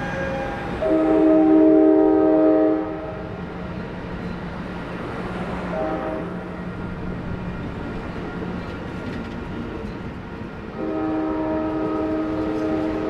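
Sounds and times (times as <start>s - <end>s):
locomotive air horn blast: 0.0s - 3.3s, 5.6s - 6.5s, 10.7s - 13.0s
train rumbling: 0.0s - 13.0s.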